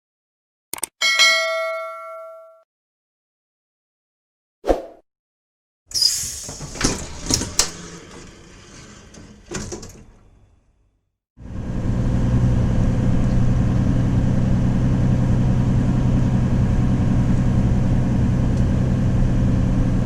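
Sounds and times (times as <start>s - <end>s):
bus bell dinging: 1.0s - 2.6s
bus doors clunking: 5.9s - 10.7s.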